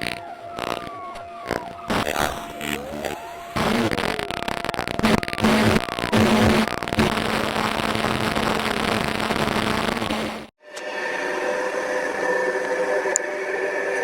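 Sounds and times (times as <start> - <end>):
dense electronic crackling: 0.0 - 10.5
electronic drone with steady tones: 0.0 - 14.0.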